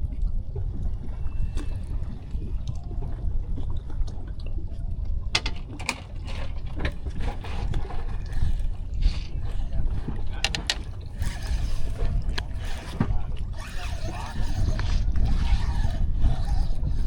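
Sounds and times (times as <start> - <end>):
water lapping against boat hull: 0.0 - 17.0.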